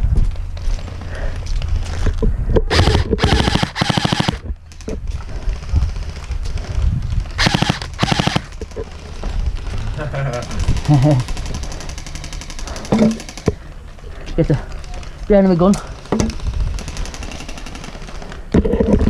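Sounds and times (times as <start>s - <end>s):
airsoft gun full-auto bursts: 2.7s - 4.4s, 7.4s - 9.0s, 10.6s - 13.5s, 15.9s - 18.2s.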